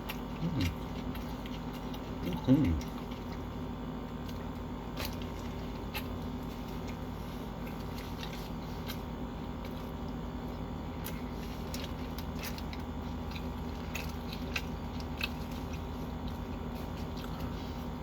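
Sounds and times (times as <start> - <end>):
person chewing sandwich: 0.0 - 18.0.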